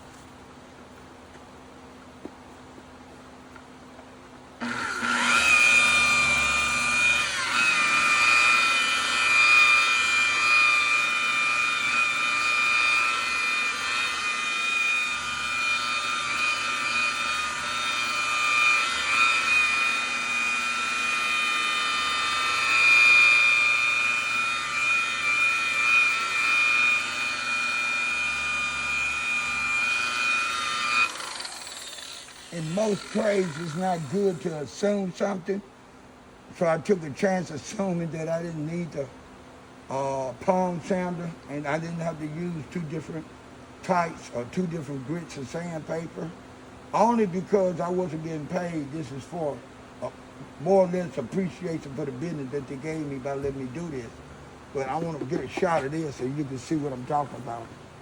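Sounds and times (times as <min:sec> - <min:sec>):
electric polisher whining: 0:04.6 - 0:34.4, 0:54.9 - 0:56.0.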